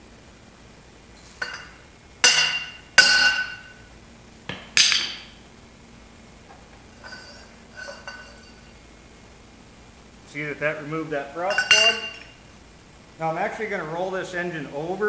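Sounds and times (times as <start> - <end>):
hard metallic clanks with ringing: 1.4 - 3.8, 7.0 - 8.8, 11.4 - 12.4.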